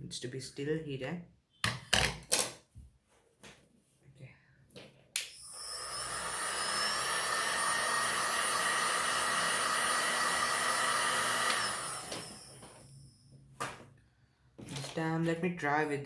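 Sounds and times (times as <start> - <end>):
heat gun blowing: 5.2 - 13.0.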